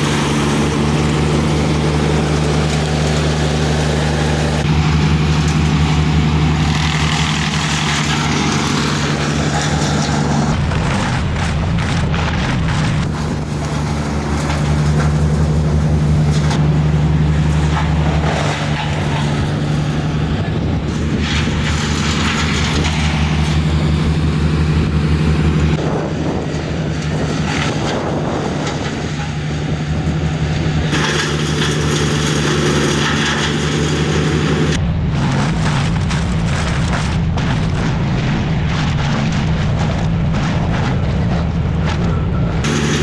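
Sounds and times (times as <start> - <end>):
machine engine humming: 0.0 - 10.7, 12.8 - 34.8, 42.1 - 43.0.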